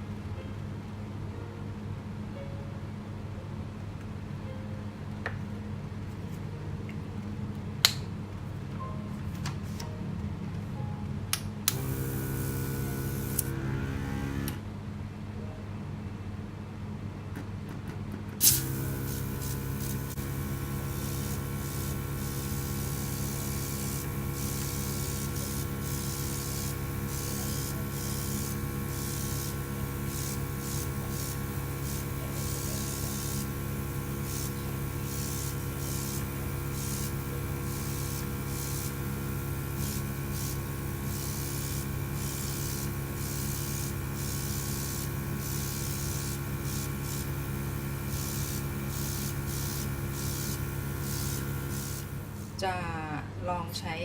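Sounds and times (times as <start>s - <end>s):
air compressor motor humming: 11.7s - 14.6s, 18.4s - 52.6s
airbrush spraying hisses: 18.4s - 52.6s.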